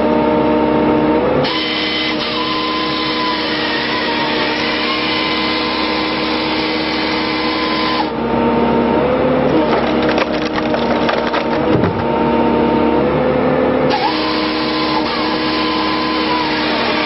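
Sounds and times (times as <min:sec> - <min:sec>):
machine engine and hydraulic whine: 0:00.0 - 0:17.0
logs cracking and splintering: 0:09.5 - 0:12.2.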